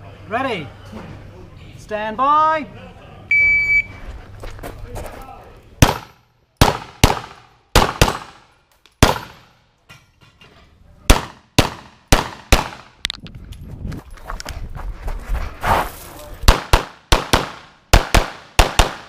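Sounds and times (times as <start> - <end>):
rapid pistol shots: 5.8 - 9.5, 11.1 - 13.0, 16.5 - 19.0.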